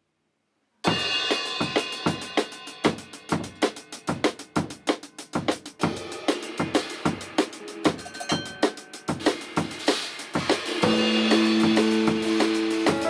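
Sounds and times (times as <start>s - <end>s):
drum kit playing fast beat: 0.9s - 13.0s
guitar and keyboard chord: 10.8s - 13.0s.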